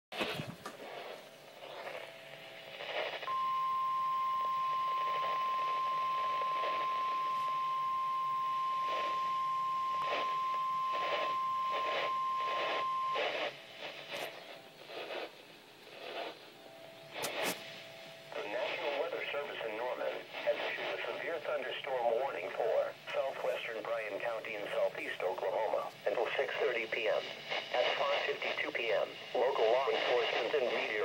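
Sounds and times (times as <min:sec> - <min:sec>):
steady warning alarm tone: 0:00.8 - 0:15.3.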